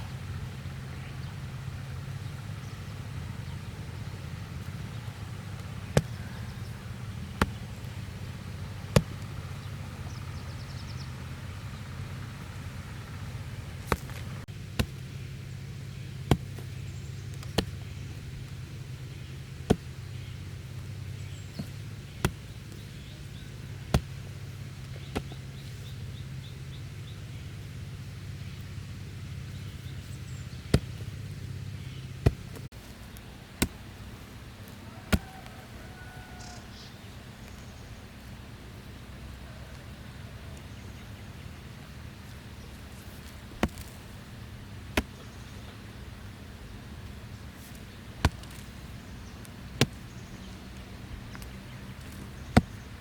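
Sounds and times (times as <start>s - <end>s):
steady low hum: 0.0s - 53.0s
sharp single knocks: 5.6s - 6.4s, 8.9s - 9.3s, 23.9s - 24.2s, 34.9s - 35.6s, 43.2s - 44.0s, 47.7s - 50.2s, 51.3s - 53.0s.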